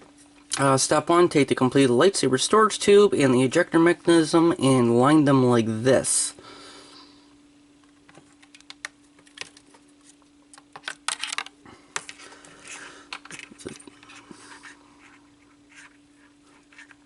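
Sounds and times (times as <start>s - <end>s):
faint steady hum: 0.0s - 17.0s
plastic parts clicking and tapping: 10.5s - 12.2s.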